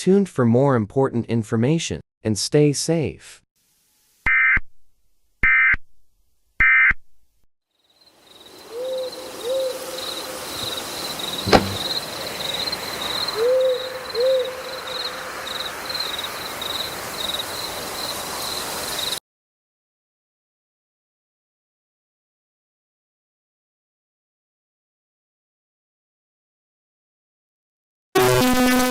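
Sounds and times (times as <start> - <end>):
crickets chirping: 7.8 - 19.2
owl hooting: 8.6 - 10.4, 13.3 - 15.1
sharp click: 11.5 - 12.0.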